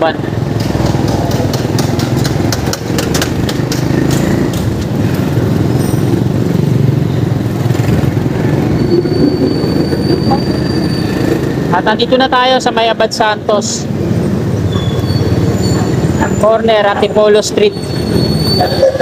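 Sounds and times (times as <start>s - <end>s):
road and traffic noise: 0.0s - 19.0s
vehicle engine running: 0.2s - 11.9s.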